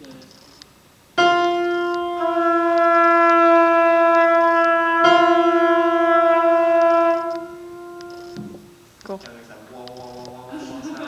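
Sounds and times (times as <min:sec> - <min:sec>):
wind instruments sustained note: 0:01.2 - 0:08.9.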